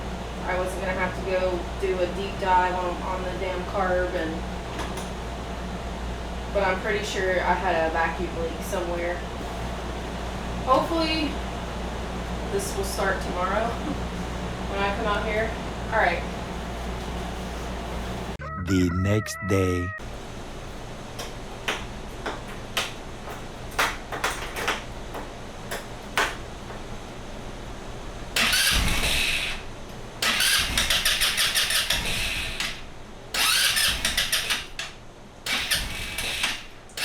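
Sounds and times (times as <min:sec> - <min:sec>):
scooter engine cranking on starter: 0:28.4 - 0:29.6, 0:30.2 - 0:34.8, 0:35.5 - 0:37.0.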